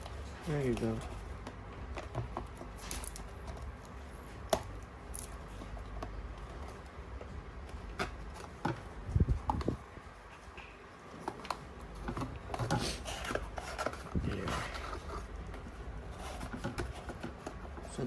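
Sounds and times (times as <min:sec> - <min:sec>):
packaging rubbing and scraping: 0:08.2 - 0:18.0.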